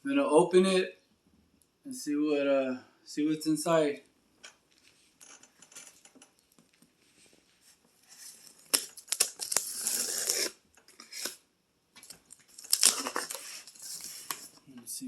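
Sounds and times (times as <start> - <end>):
cardboard tearing scrape: 8.2 - 11.4, 12.6 - 14.5.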